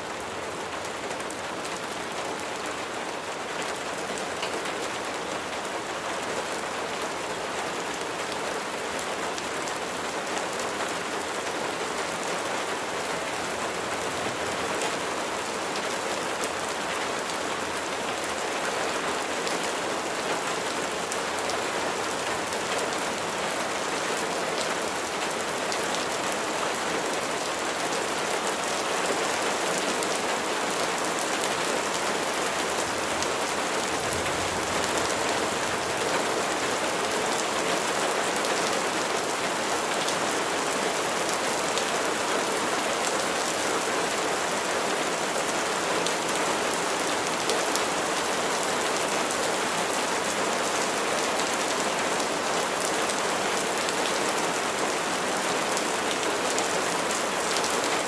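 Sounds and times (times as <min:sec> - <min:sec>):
steady rain pattering: 0:00.0 - 0:58.0.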